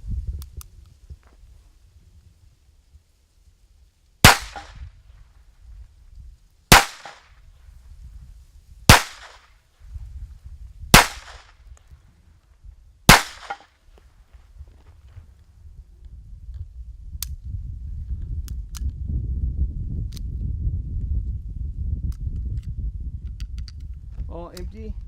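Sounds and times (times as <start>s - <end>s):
pistol shots: 4.2s - 4.8s, 6.7s - 7.3s, 8.9s - 9.5s, 10.9s - 11.5s, 13.1s - 13.7s.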